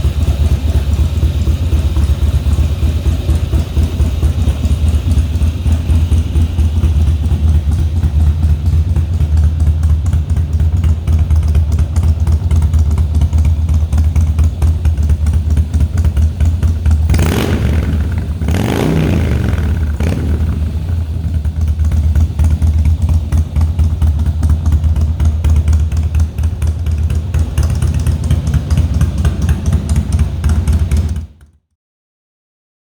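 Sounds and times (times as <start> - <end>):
motorcycle engine idling: 0.0 - 31.5.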